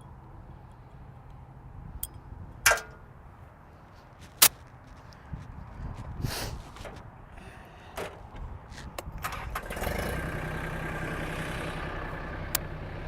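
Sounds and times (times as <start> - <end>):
tractor diesel engine idling: 9.1 - 13.0.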